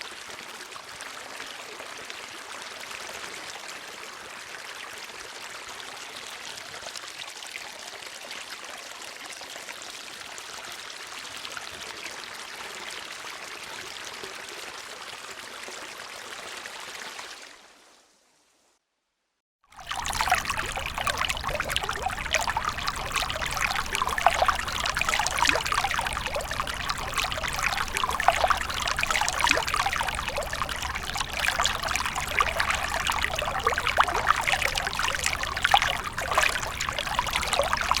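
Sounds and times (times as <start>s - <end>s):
water trickling and bubbling: 19.7s - 38.0s.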